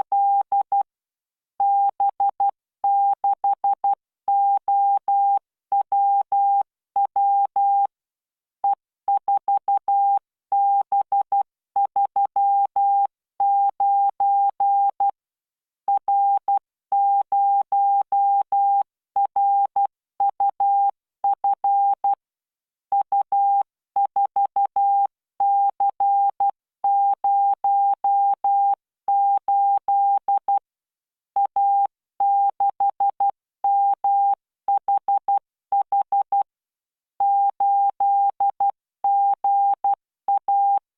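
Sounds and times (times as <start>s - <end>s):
morse code beeps: 37.2s - 40.8s.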